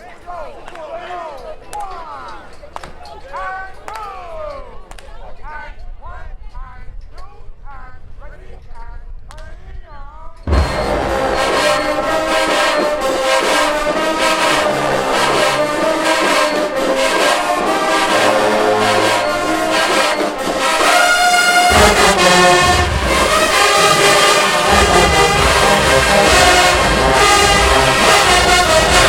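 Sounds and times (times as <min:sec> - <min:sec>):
heavy low drums: 0:10.5 - 0:29.0
marching band brass: 0:10.5 - 0:29.0.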